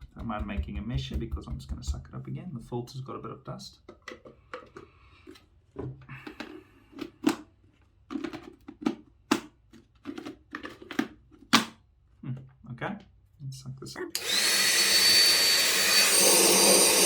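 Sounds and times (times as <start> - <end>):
plastic parts clicking and knocking: 3.8 - 11.8.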